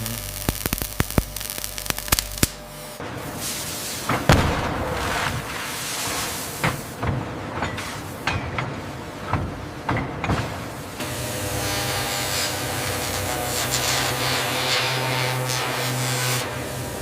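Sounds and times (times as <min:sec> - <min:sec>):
machine hum with hiss: 0:00.0 - 0:07.0, 0:10.4 - 0:17.0
metallic knocks and clanks: 0:07.0 - 0:10.7.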